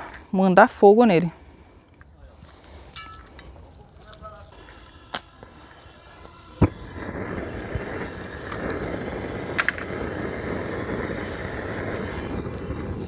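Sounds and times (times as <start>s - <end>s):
gas torch flame rushing: 4.4s - 13.0s.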